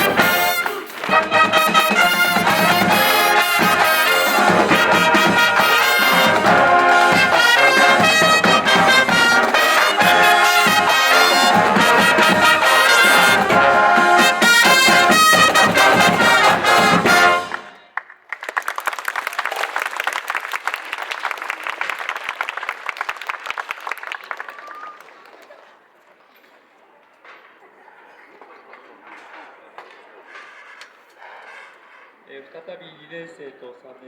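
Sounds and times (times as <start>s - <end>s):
marching band playing: 0.0s - 17.9s.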